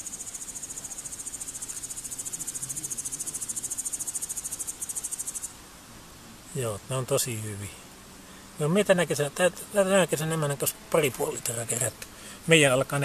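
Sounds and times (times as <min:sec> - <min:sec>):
insect trilling: 0:00.0 - 0:05.6.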